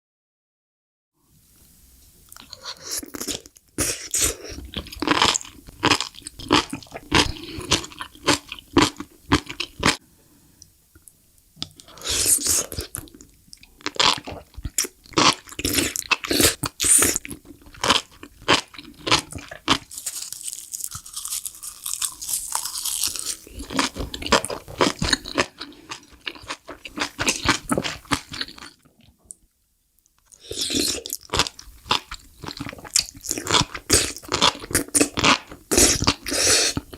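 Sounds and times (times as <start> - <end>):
crunchy mushrooms chewed: 2.4 - 10.0, 11.8 - 29.0, 30.3 - 36.9.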